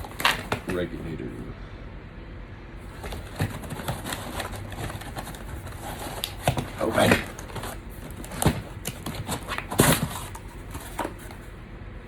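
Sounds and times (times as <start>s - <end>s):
packaging rustling: 0.0s - 0.8s, 2.9s - 11.4s.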